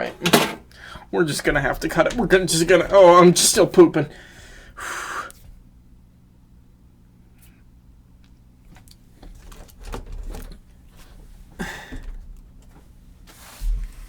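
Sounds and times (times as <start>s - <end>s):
handling noise clicks and rustling: 0.0s - 3.6s, 8.7s - 11.2s.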